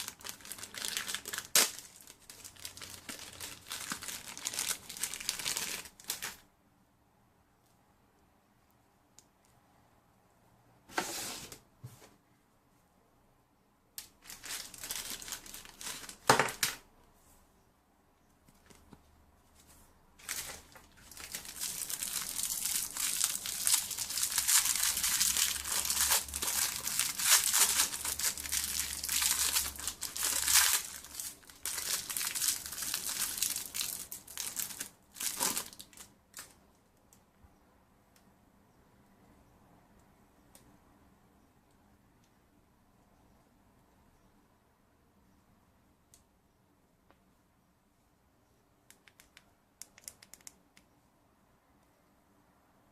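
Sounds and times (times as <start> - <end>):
packaging crinkling and tearing: 0.0 - 6.4, 14.2 - 16.8, 20.2 - 36.6.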